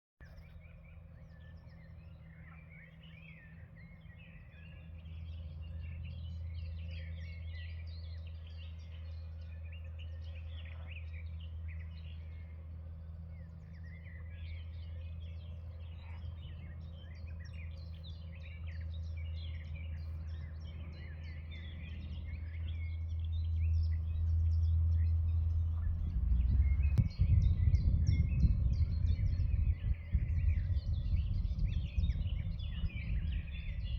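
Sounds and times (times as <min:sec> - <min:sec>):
songbirds chirping: 0:00.2 - 0:33.9
wind on microphone: 0:23.6 - 0:33.9.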